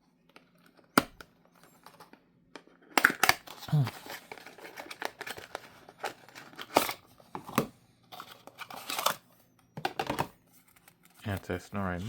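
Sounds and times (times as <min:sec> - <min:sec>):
packaging rustling and crinkling: 0:03.1 - 0:07.3, 0:08.1 - 0:09.3.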